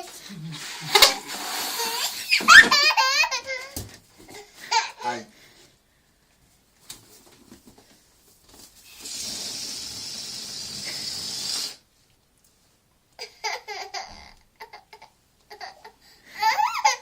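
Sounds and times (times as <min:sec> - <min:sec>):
air hissing from balloon: 0:00.6 - 0:02.5, 0:08.8 - 0:11.9
child laughing and babbling: 0:01.8 - 0:03.8.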